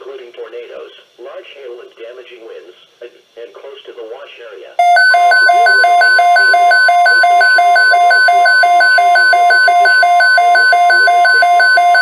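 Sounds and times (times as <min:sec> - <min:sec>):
faint broadcast speech: 0:00.0 - 0:11.8
weather radio alert tones: 0:04.8 - 0:12.0.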